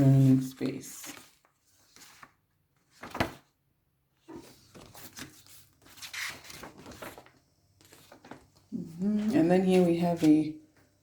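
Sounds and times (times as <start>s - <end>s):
paper rustling and sliding: 0.0s - 3.5s, 4.2s - 8.6s.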